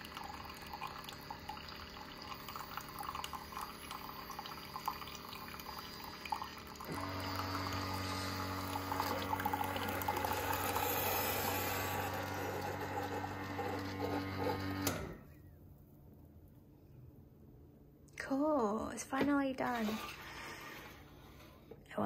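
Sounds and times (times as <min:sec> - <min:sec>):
coffee splashing into cup: 0:00.0 - 0:11.0
coffee maker pump humming: 0:00.0 - 0:15.4.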